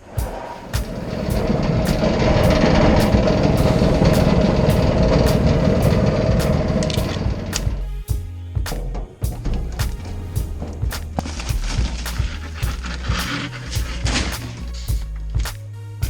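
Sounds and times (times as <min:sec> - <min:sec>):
clothes dryer rumbling: 0:00.0 - 0:15.2.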